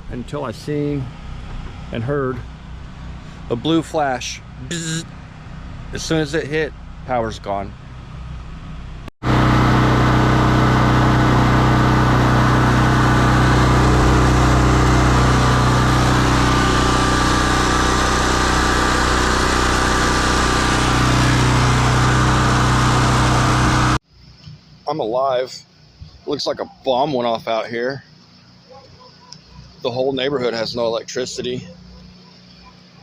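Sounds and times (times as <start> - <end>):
portable generator running: 9.2 - 24.0.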